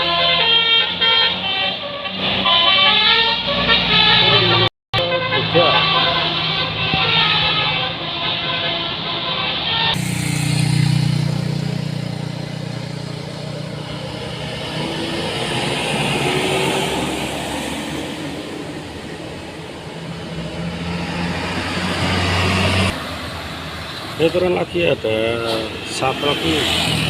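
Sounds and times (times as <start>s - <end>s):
diesel bus engines: 0.0s - 27.0s
multi-tone horn chord: 0.2s - 10.7s.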